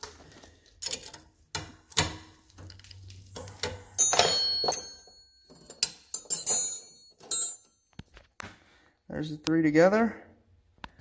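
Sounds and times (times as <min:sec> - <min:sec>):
metal wrenches clanking: 0:03.5 - 0:07.7.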